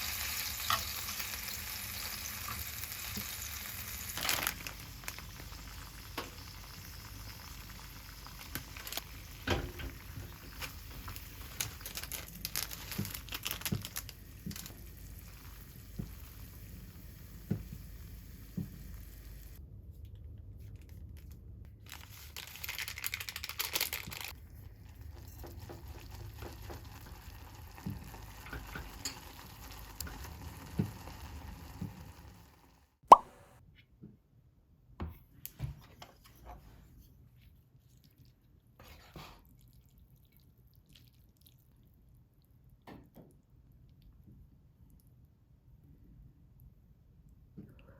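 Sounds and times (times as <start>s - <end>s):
food sizzling in a pan: 0.0s - 19.6s, 25.1s - 32.7s.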